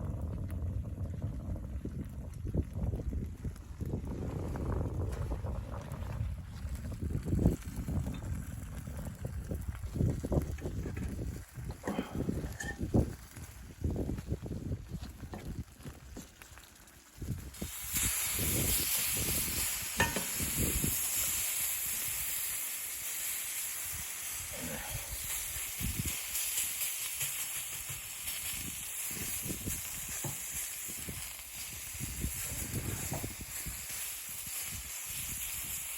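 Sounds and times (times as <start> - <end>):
food sizzling in a pan: 14.9 - 35.9.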